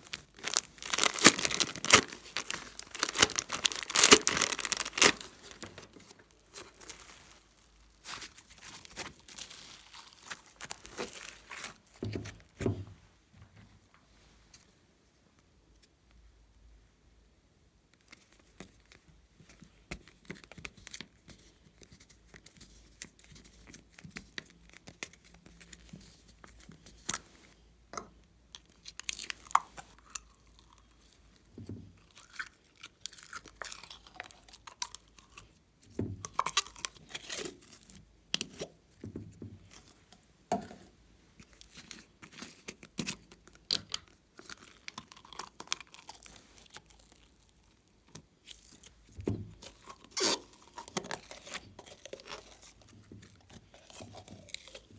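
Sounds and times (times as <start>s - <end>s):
slime clicking and popping: 0.1s - 5.7s.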